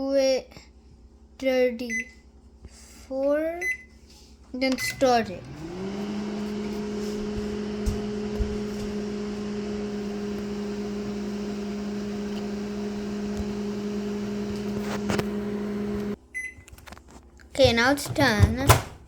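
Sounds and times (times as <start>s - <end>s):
microwave oven humming: 4.7s - 16.5s.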